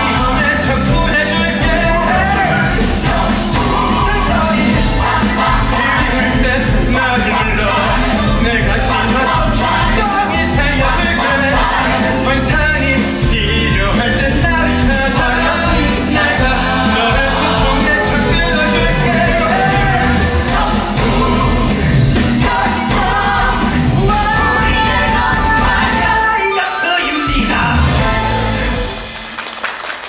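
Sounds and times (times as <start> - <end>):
cast voices singing: 0.0 - 29.1
upbeat rock band: 0.0 - 29.8.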